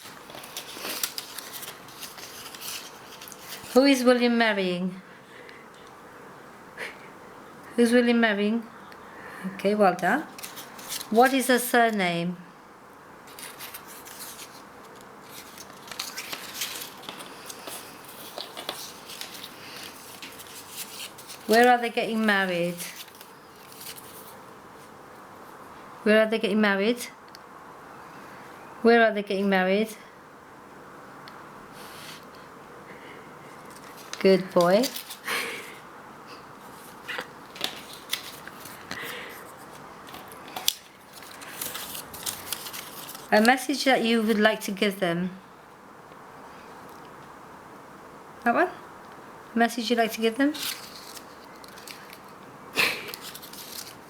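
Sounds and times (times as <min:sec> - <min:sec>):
faint small clicks and rustles: 0:00.0 - 0:03.8, 0:13.2 - 0:21.8, 0:50.6 - 0:54.0
small rustles: 0:00.0 - 0:04.0, 0:10.0 - 0:12.0, 0:13.2 - 0:25.7, 0:33.4 - 0:44.5, 0:50.3 - 0:54.0.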